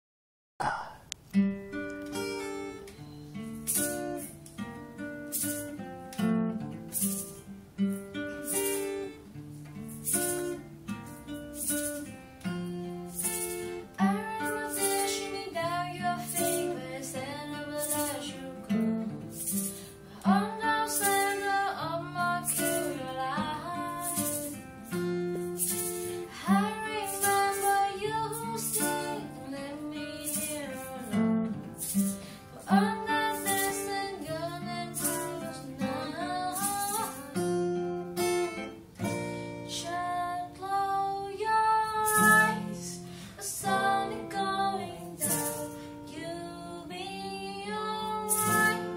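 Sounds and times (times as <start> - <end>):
strummed acoustic guitar: 0.7 - 48.9
woman singing: 13.8 - 24.7, 25.8 - 37.9, 39.6 - 48.9.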